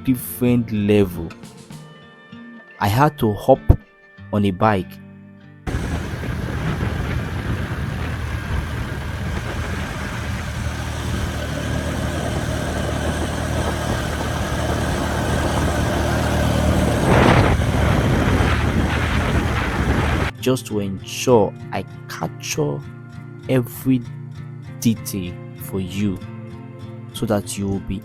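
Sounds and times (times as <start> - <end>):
motorcycle engine running: 5.7 - 20.3
road and wind noise: 5.7 - 20.3.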